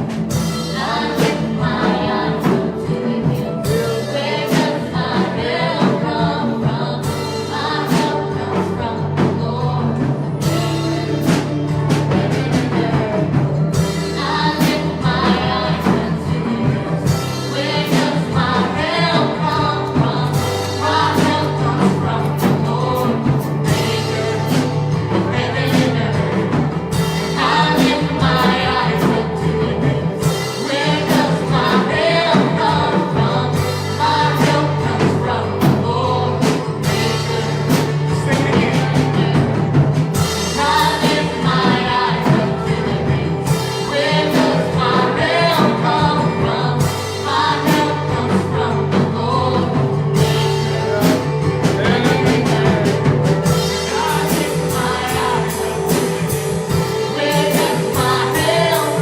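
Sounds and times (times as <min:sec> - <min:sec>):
band playing worship music: 0:00.0 - 0:59.0
bass notes: 0:00.0 - 0:59.0.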